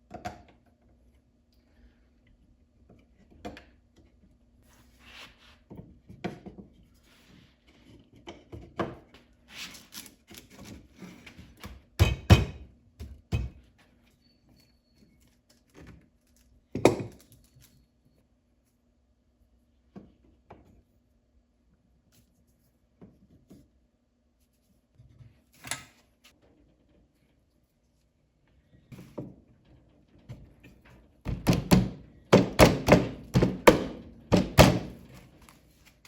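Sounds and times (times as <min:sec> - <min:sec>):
wooden pieces knocked on workbench: 0:31.3 - 0:35.0.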